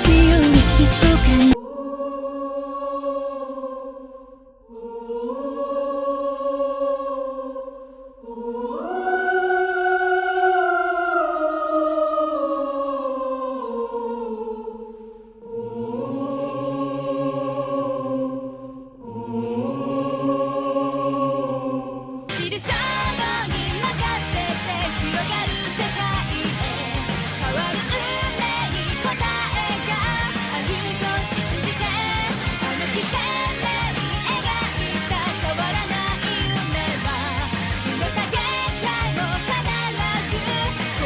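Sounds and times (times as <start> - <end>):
busier loud music: 0.0 - 1.6, 22.7 - 41.0
slow choir-like singing: 0.0 - 41.0.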